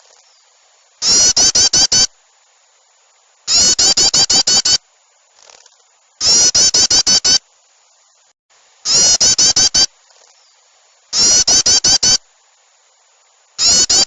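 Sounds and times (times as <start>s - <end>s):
small birds chattering in alarm: 0.2s - 2.1s, 3.5s - 4.8s, 6.2s - 7.4s, 8.9s - 12.2s, 13.6s - 14.0s.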